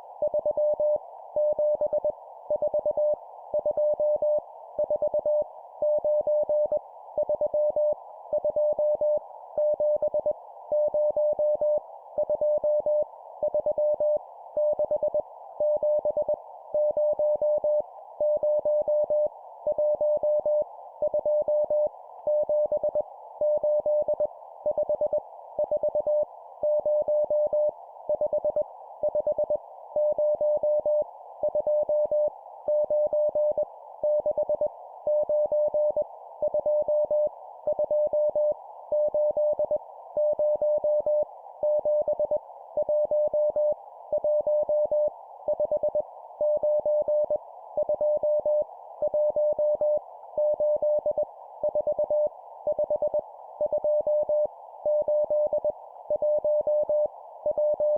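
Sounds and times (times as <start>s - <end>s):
morse code beeps: 52.7s - 57.9s.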